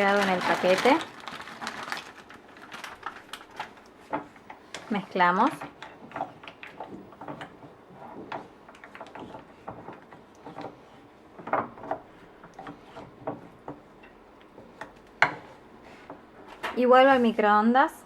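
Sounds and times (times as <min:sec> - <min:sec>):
utensil scraping and tapping bowl: 0:04.1 - 0:17.5.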